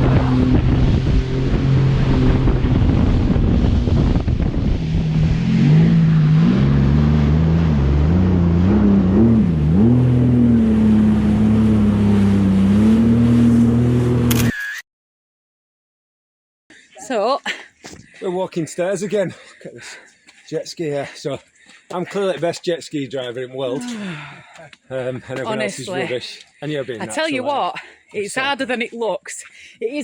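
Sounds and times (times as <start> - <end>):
wind buffeting microphone: 0.0 - 6.5
jet ski engine running: 0.0 - 14.4.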